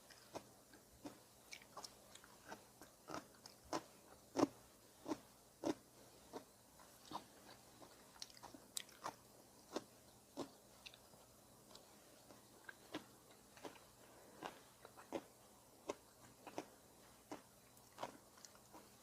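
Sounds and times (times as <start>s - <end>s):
chewing noodles: 0.0s - 11.1s.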